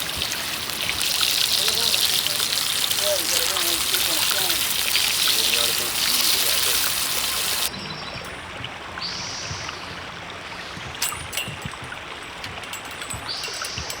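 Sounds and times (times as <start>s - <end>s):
river water flowing: 0.0s - 14.0s.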